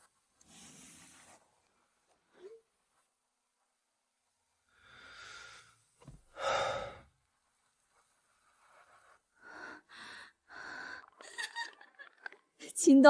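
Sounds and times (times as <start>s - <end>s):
person sighing: 6.4s - 7.1s.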